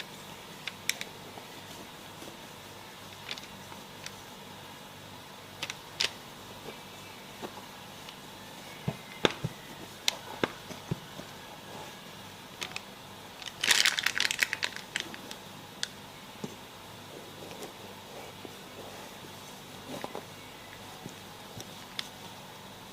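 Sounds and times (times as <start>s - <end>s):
dense crinkling crackle: 12.6s - 15.4s.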